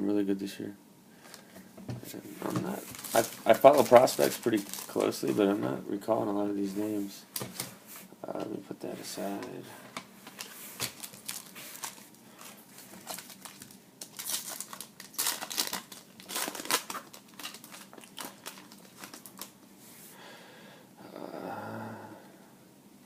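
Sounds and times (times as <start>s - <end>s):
plastic wrapper crinkling and tearing: 2.6s - 5.4s, 10.3s - 19.6s.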